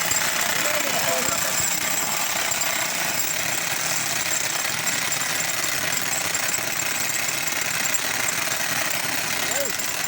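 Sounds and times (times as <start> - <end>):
jackhammer breaking concrete: 0.0 - 10.0.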